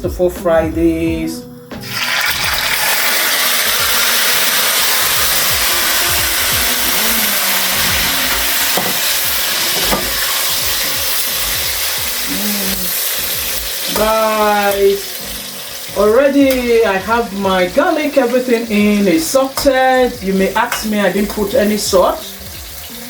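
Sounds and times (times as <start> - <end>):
garlic sizzling in hot oil: 1.8 - 23.0.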